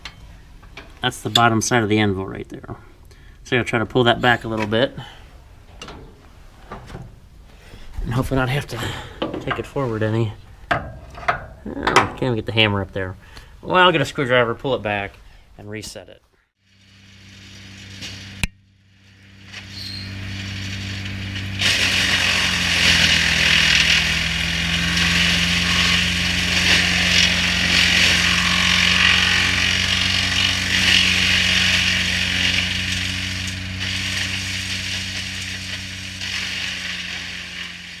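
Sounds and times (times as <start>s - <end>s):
tractor engine hum: 16.7s - 38.0s
wood chipper rushing: 16.7s - 38.0s.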